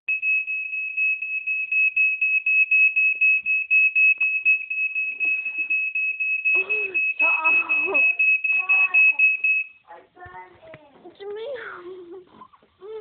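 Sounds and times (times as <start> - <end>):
smoke alarm beeping: 0.1 - 9.9.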